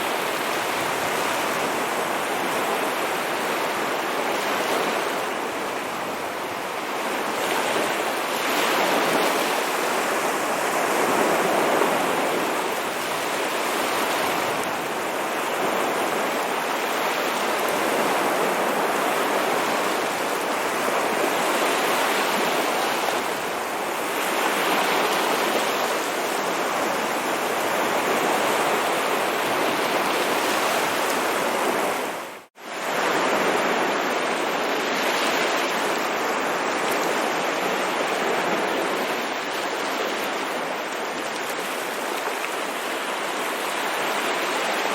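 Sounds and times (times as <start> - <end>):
ocean waves breaking on shore: 0.0 - 44.9.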